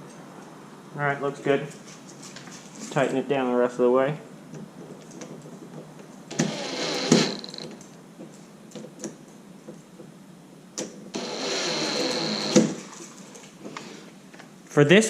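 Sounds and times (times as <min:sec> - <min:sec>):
power drill driving screws: 0:06.3 - 0:07.7, 0:11.1 - 0:12.9.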